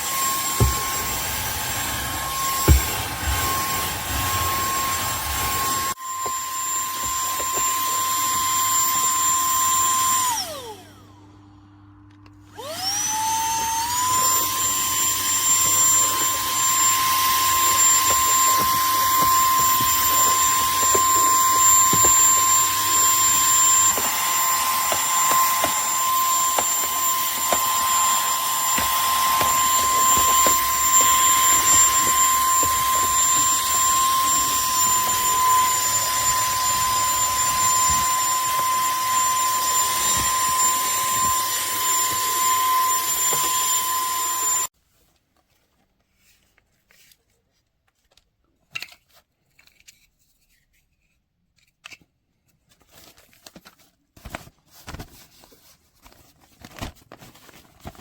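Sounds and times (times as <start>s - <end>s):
handheld vacuum cleaner whine: 0.0s - 44.7s
faint clicks and handling noises: 44.9s - 55.0s.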